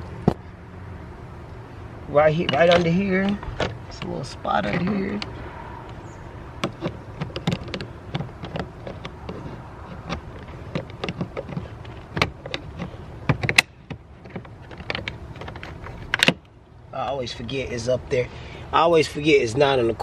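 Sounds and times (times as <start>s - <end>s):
screwdriver prying plastic panel: 6.6s - 16.4s.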